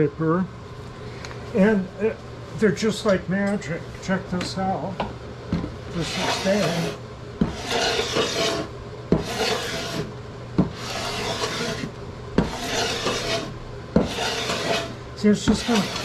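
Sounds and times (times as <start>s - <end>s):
scraper blade scraping wood: 6.0s - 16.0s.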